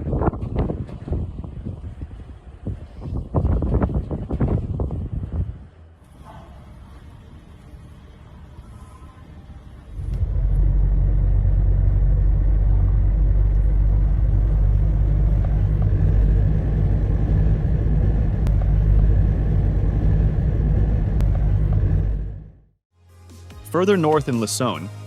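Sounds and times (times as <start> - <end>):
storm wind buffeting microphone: 0.0 - 5.9, 9.9 - 22.6.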